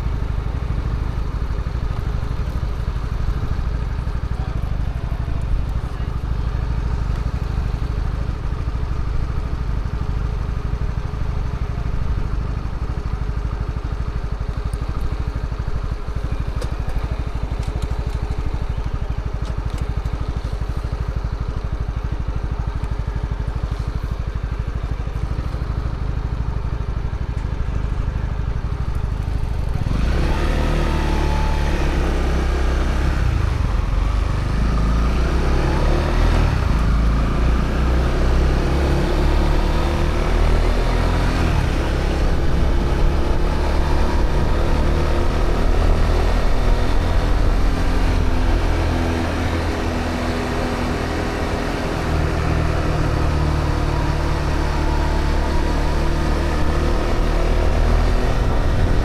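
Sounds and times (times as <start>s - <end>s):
motorcycle engine running: 0.0s - 59.0s.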